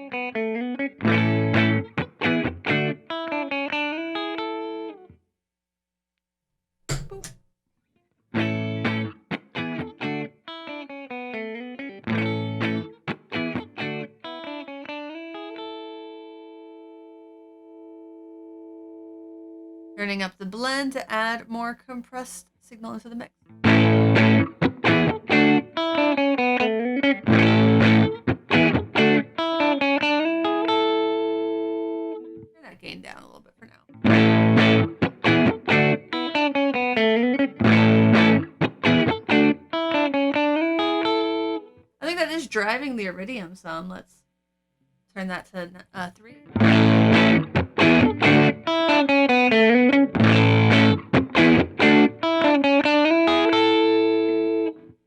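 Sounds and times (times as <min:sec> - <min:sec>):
electric guitar chords and notes: 0:00.0 - 0:05.2, 0:08.3 - 0:20.0, 0:23.5 - 0:32.5, 0:33.9 - 0:41.9, 0:46.2 - 0:55.0.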